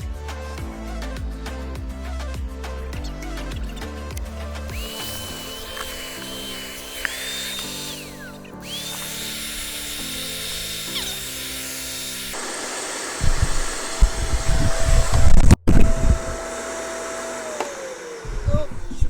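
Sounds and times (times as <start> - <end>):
background music: 0.0 - 12.4
high motor whine: 2.9 - 19.0.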